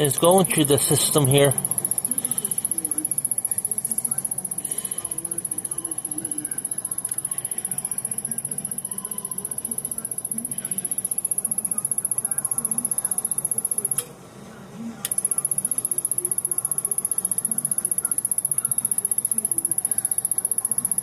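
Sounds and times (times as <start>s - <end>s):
high-pitched rapid electrical ticking: 0.0s - 14.0s, 15.1s - 21.0s.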